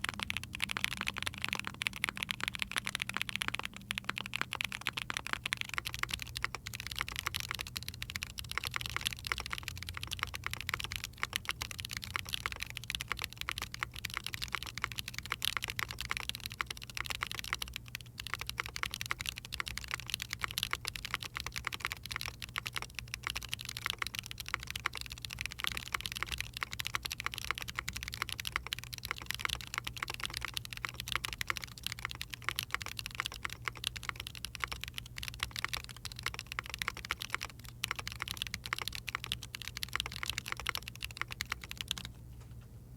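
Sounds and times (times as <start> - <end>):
fast typing on mechanical keyboard: 0.0 - 42.2.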